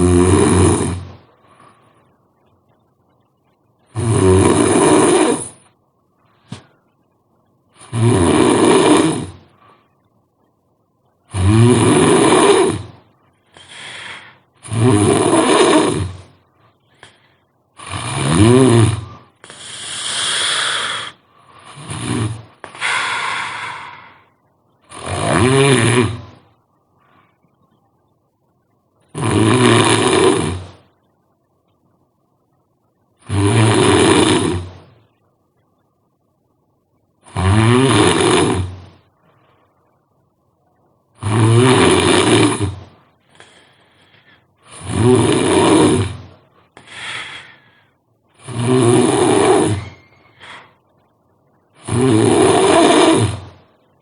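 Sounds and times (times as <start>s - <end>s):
person snoring loudly: 0.0s - 1.2s, 3.9s - 5.6s, 7.8s - 9.5s, 11.3s - 13.0s, 13.6s - 16.3s, 17.8s - 24.3s, 24.9s - 26.4s, 29.1s - 30.8s, 33.2s - 34.8s, 37.2s - 38.9s, 41.2s - 42.9s, 44.6s - 47.6s, 48.4s - 50.8s, 51.8s - 53.6s.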